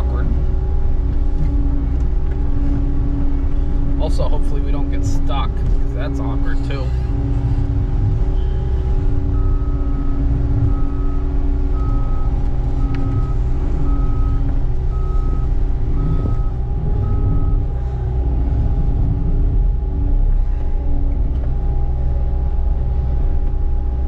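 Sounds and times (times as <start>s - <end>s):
skid steer engine running: 0.0s - 24.0s
backup alarm beeping: 7.2s - 19.1s.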